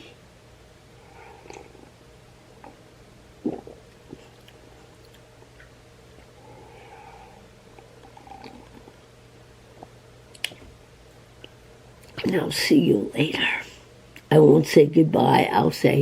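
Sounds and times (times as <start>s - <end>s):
electrical hum: 0.0s - 16.0s
person sipping tea: 1.0s - 2.0s, 3.4s - 5.2s, 6.2s - 9.0s.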